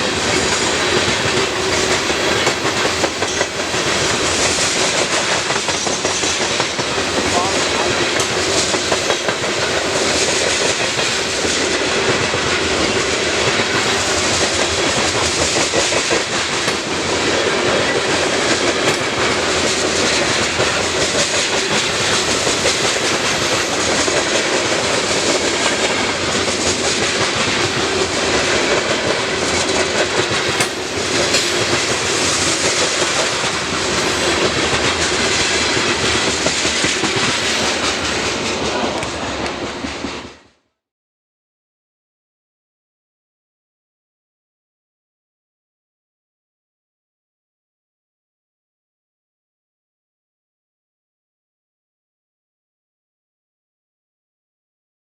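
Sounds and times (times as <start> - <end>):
train wheels clacking over rail joints: 0.0 - 40.4.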